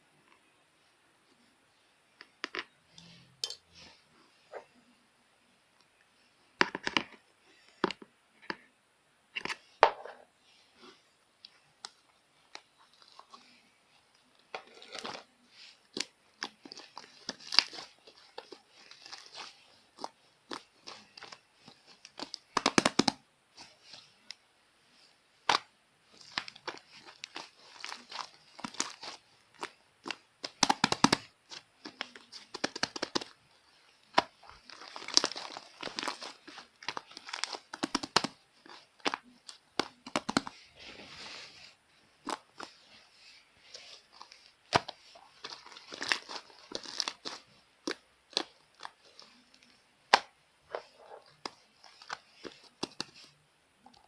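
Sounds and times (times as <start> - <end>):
slime crackling and popping: 14.6 - 24.0, 25.4 - 40.6, 44.6 - 53.3.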